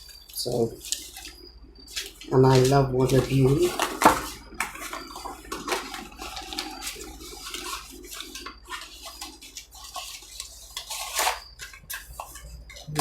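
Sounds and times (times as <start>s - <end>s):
plastic packaging rustling: 0.0s - 13.0s.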